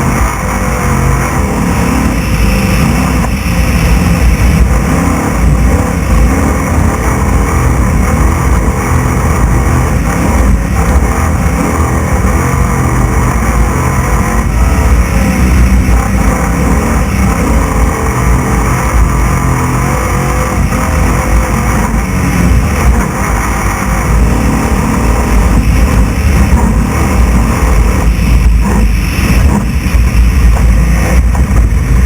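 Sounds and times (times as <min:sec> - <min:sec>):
road and wind noise: 0:00.0 - 0:32.0
truck engine running hard: 0:00.0 - 0:32.0.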